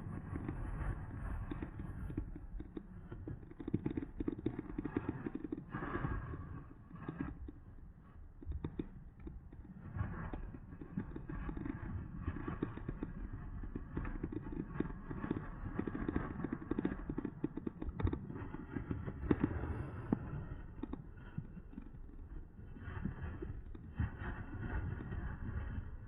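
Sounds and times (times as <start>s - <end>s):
wind and tyre rumble: 18.0s - 26.0s.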